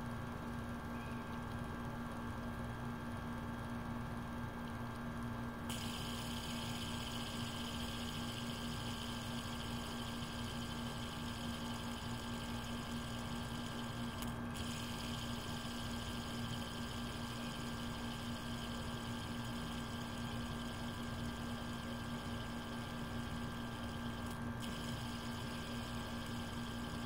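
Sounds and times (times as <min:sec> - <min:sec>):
electrical hum: 0:05.6 - 0:27.0.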